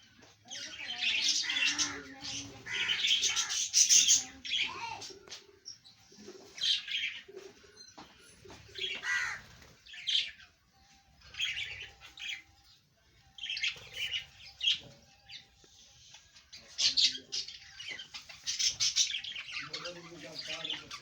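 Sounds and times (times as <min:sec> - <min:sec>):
parrot chirping and squawking: 0:01.2 - 0:04.7, 0:16.7 - 0:19.8.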